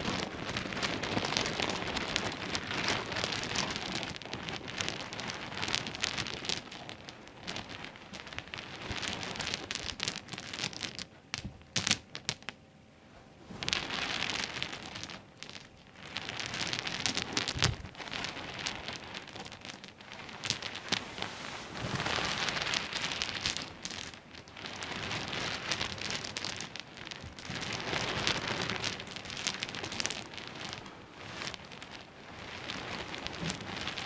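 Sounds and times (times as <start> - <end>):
pebbles clattering: 0.0 - 12.5, 13.6 - 34.0.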